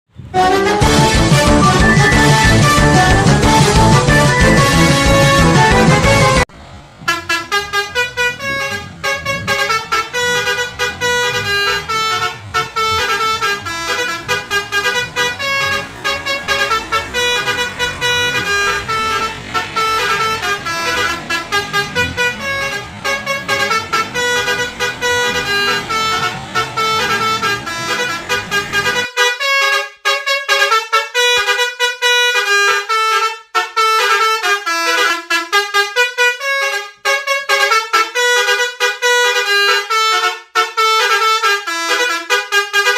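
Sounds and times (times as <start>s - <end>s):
low rumble: 0.2s - 28.8s
musical air horn: 0.4s - 6.5s, 7.1s - 42.9s.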